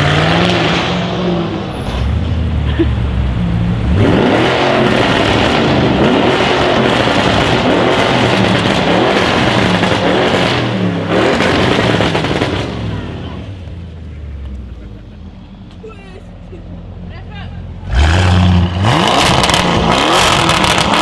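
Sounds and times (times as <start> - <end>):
loud car engine revving: 0.0 - 2.6, 3.2 - 13.6, 17.8 - 21.0.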